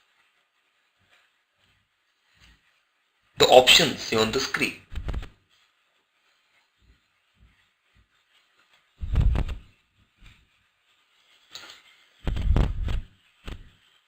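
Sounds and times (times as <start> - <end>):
low rumbling on microphone: 9.0 - 9.7, 12.2 - 13.7.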